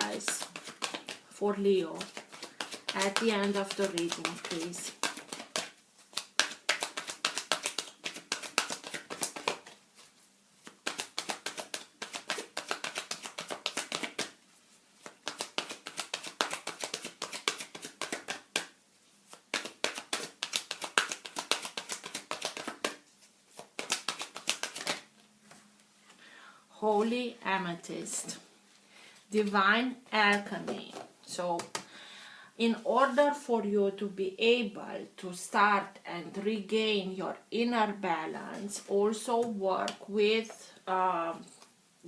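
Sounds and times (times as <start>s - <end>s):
cards being shuffled: 0.0s - 14.4s, 15.0s - 25.6s, 30.3s - 31.9s.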